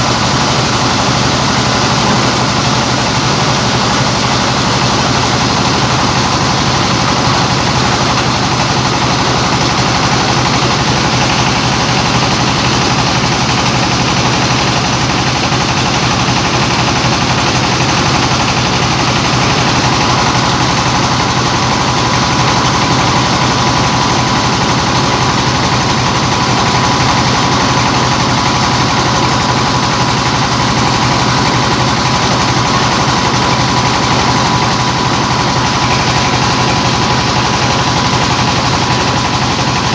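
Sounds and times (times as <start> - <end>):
thin steady whine: 0.0 - 14.8
diesel engine running: 0.0 - 39.9
mill whirring: 0.0 - 39.9.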